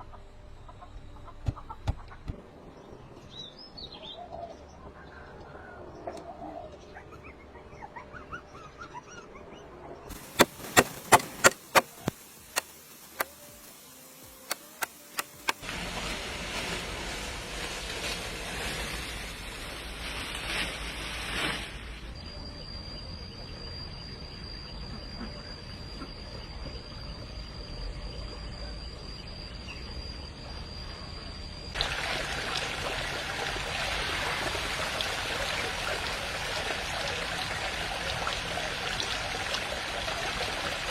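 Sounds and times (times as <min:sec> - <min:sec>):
high-pitched insect call: 0:10.1 - 0:40.9
faint bird chirps: 0:22.0 - 0:31.6.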